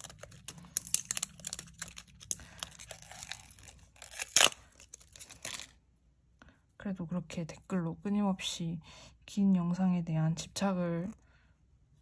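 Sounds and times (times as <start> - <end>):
tape and paper crackling: 0.0 - 5.8.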